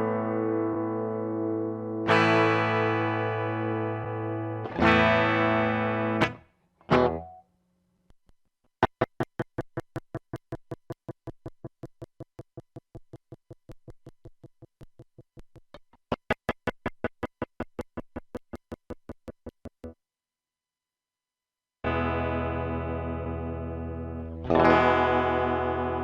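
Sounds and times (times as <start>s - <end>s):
pulsing electric guitar chord: 21.9s - 26.0s.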